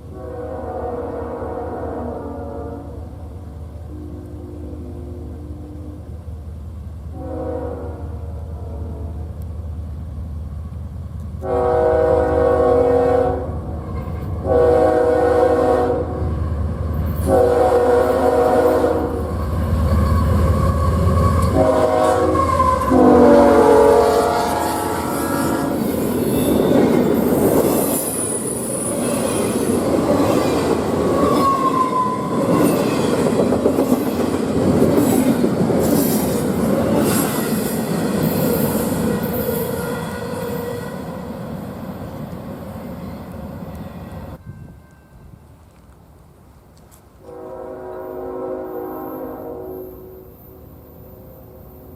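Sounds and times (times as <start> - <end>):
locomotive air horn: 0.0 - 6.2, 7.1 - 9.3, 11.4 - 16.4, 17.2 - 19.3, 20.7 - 26.9, 38.4 - 41.3, 47.2 - 50.6
wheels squealing: 19.3 - 21.6, 24.8 - 33.4
train wheels clattering: 25.6 - 39.8.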